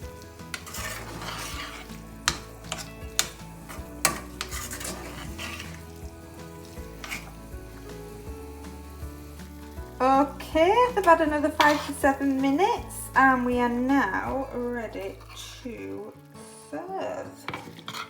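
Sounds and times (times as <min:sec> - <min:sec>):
beans sizzling in oil: 0:00.0 - 0:18.0
utensil knocking against pan: 0:02.2 - 0:05.6.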